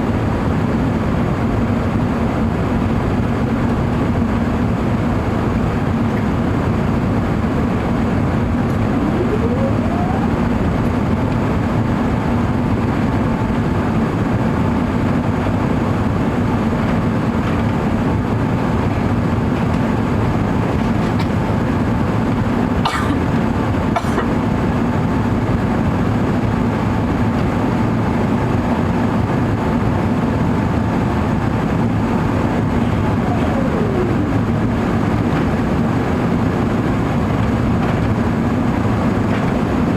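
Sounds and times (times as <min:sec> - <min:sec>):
aircraft cabin engine roar: 0:00.0 - 0:39.9
faint tone: 0:08.7 - 0:10.6.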